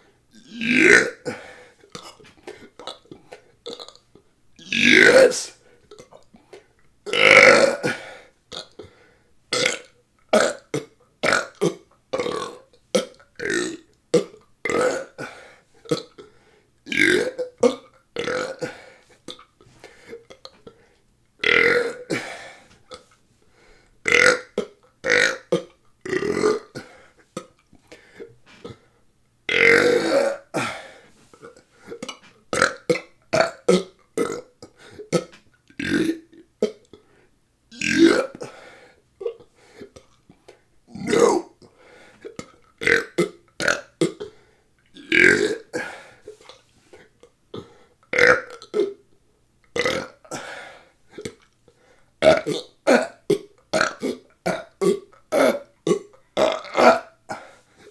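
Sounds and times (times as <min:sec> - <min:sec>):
person burping: 0:00.4 - 0:04.0, 0:04.6 - 0:06.3, 0:07.1 - 0:08.8, 0:09.5 - 0:16.2, 0:16.9 - 0:19.5, 0:21.4 - 0:23.1, 0:24.1 - 0:27.5, 0:29.5 - 0:37.0, 0:37.7 - 0:38.6, 0:40.9 - 0:41.7, 0:42.3 - 0:44.4, 0:45.0 - 0:46.0, 0:47.6 - 0:49.0, 0:49.8 - 0:50.6, 0:52.2 - 0:57.5.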